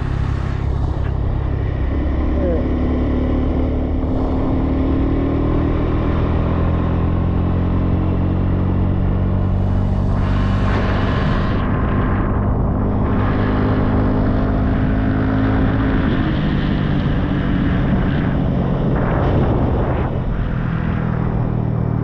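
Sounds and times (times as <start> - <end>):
motorbike engine running: 0.0 - 22.0
road noise: 0.0 - 22.0.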